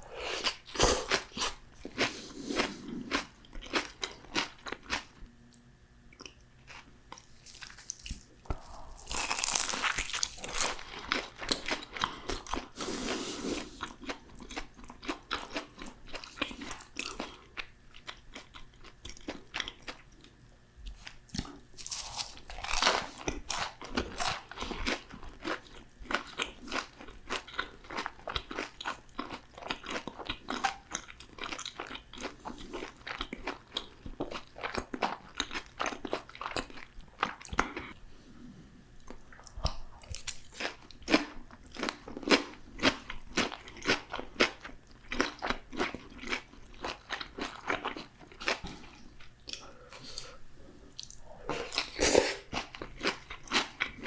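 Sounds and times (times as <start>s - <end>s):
chewing crunches: 0.2s - 5.2s, 6.1s - 12.8s, 20.9s - 38.0s, 39.0s - 49.7s, 51.0s - 54.0s
crunching bites of fried food: 6.2s - 12.7s, 21.0s - 37.8s.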